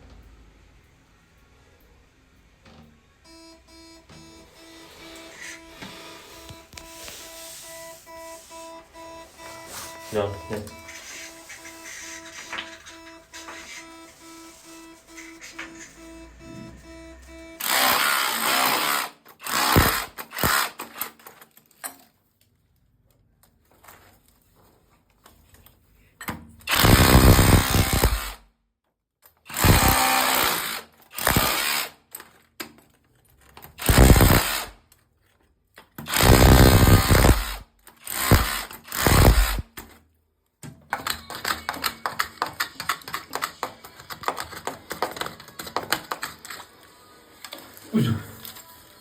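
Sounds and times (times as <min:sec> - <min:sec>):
power drill bursts: 0:03.3 - 0:21.1, 0:26.7 - 0:28.4, 0:29.5 - 0:32.0, 0:33.8 - 0:34.8, 0:36.1 - 0:39.7.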